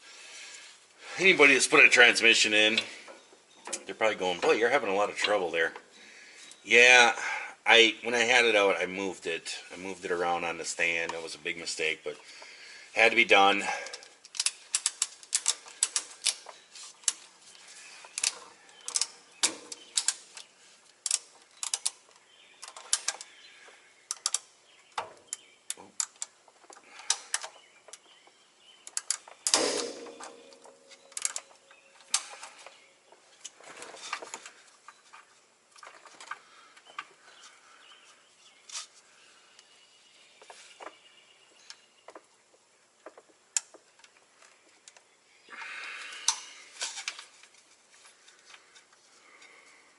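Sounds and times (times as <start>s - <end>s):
metallic clicks and taps of tools: 13.9s - 17.2s, 18.1s - 23.3s, 24.1s - 28.1s, 28.8s - 29.6s, 30.2s - 32.5s
loud metal clank: 29.5s - 31.1s.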